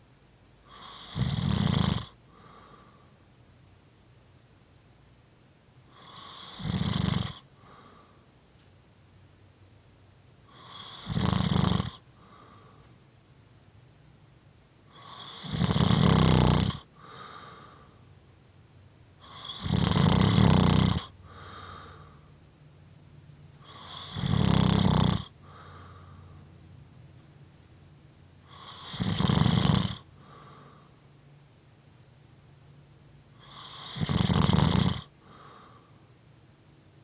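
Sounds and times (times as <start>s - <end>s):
person snoring: 0.7s - 2.8s, 5.9s - 8.0s, 10.5s - 12.6s, 14.9s - 17.9s, 19.2s - 22.2s, 23.6s - 26.2s, 28.5s - 30.9s, 33.4s - 35.9s
quiet short breath: 2.3s - 3.3s, 7.6s - 8.4s, 12.2s - 13.0s, 25.4s - 26.6s, 30.2s - 31.1s, 35.2s - 36.2s.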